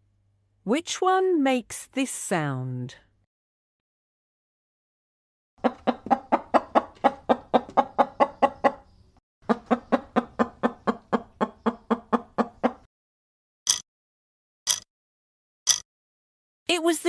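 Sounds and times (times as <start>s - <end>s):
chicken clucking rapidly: 5.6s - 12.9s.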